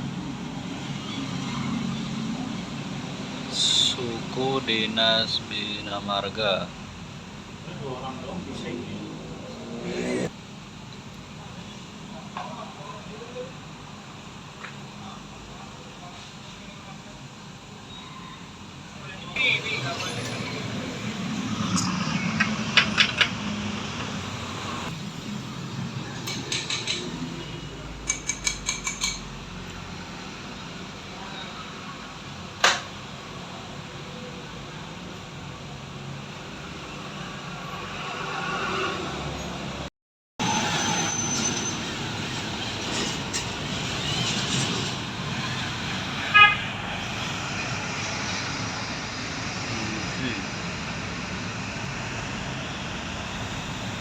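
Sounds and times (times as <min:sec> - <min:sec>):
street traffic: 0:00.0 - 0:54.0
car horn toot: 0:46.3 - 0:46.7.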